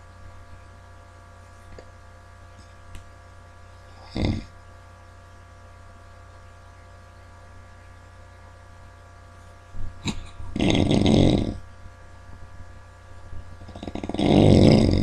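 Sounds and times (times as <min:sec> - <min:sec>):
steady background hum: 0:00.0 - 0:15.0
person snoring: 0:03.9 - 0:04.5, 0:10.0 - 0:11.6, 0:13.6 - 0:15.0.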